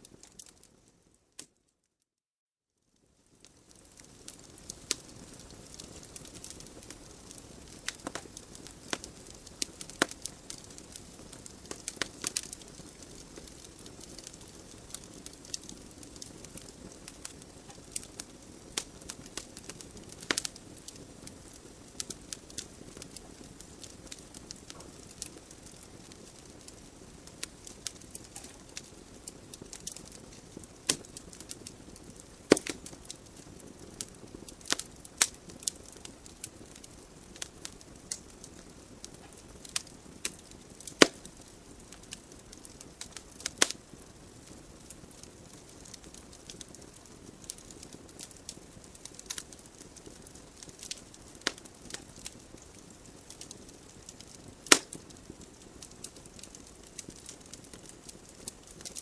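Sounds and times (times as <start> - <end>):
logs crackling and popping: 0.0 - 1.6, 3.2 - 59.0.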